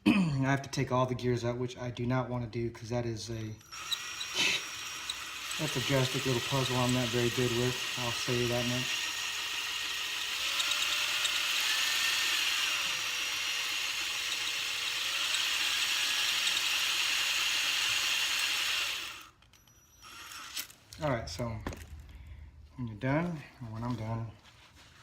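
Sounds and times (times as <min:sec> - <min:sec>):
hone grinding in metal bore: 0:03.6 - 0:20.7.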